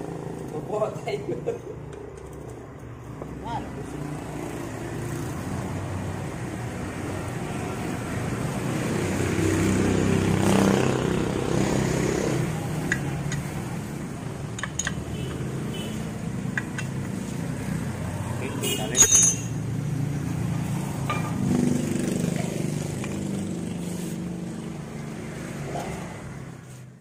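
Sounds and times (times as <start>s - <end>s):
vehicle engine passing by: 3.3s - 14.4s, 19.6s - 26.8s.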